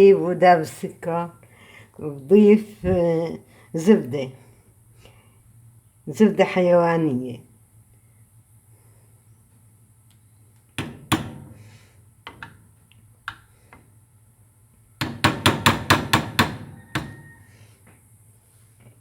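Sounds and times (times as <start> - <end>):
metal utensil knocking on pan: 15.0 - 17.2.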